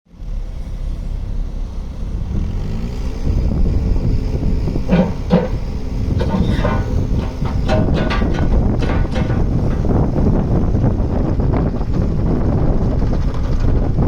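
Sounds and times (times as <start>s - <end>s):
excavator diesel engine running: 0.1s - 14.0s
sharp metallic clanks: 4.9s - 10.2s.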